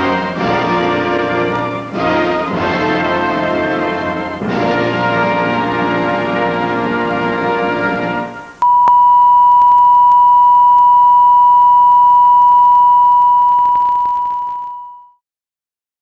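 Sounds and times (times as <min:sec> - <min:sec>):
high steady test tone beep: 0:08.6 - 0:15.2.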